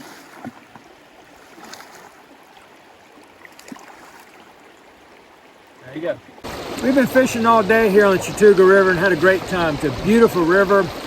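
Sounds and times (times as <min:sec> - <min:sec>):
river rushing over rapids: 0:05.9 - 0:11.0.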